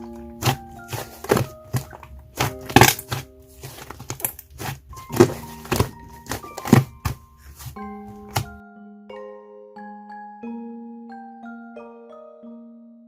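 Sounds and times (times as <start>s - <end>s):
slime squishing by hand: 0.0s - 8.6s
soft background music: 0.0s - 13.0s.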